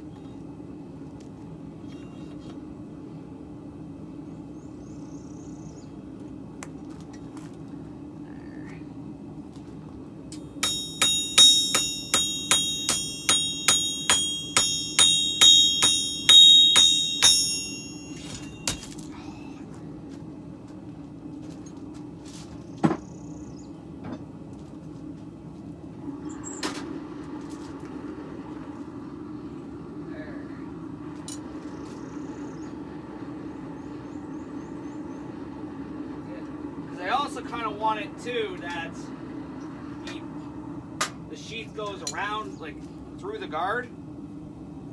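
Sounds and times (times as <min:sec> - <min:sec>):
steady low hum: 0:00.0 - 0:44.9
hammer striking steel on anvil: 0:10.6 - 0:19.0.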